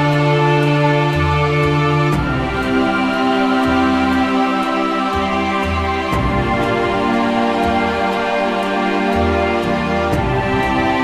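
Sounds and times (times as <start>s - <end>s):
instrumental background music: 0.0s - 11.0s.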